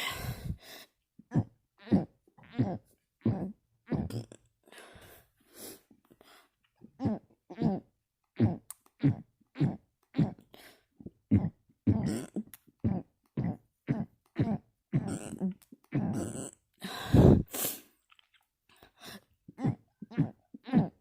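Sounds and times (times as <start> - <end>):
person burping: 1.3 - 4.4, 11.4 - 17.5, 19.6 - 21.0.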